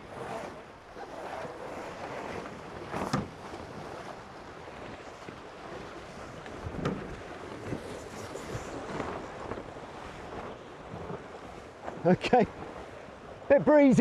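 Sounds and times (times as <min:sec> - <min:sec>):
water rushing along hulls: 0:00.0 - 0:14.0
wind blowing on microphone: 0:06.0 - 0:12.8.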